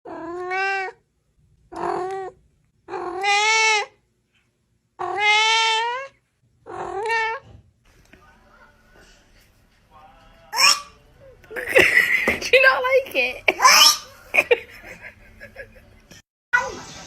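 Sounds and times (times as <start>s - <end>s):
cat meowing: 1.7s - 4.0s, 5.0s - 7.5s.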